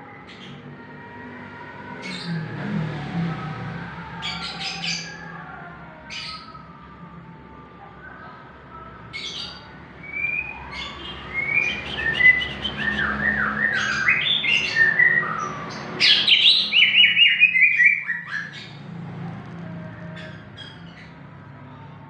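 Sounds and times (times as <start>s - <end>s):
bird singing chirps and whistles: 9.1s - 18.7s.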